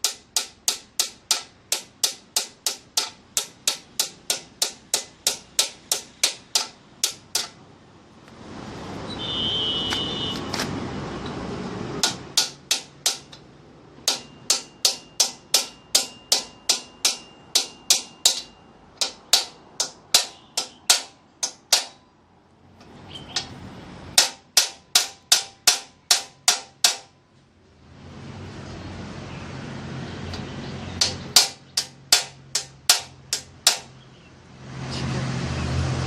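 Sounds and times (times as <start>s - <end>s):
sharp metallic taps: 0.0s - 7.6s, 12.0s - 22.2s, 22.8s - 27.5s, 30.2s - 34.2s.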